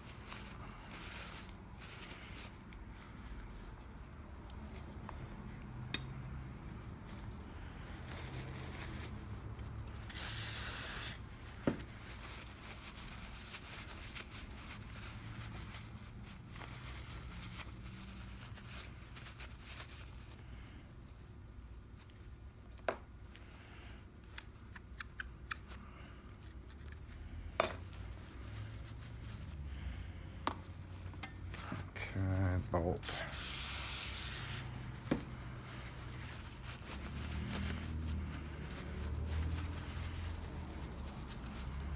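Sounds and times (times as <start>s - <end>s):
brief hiss: 10.1s - 11.2s.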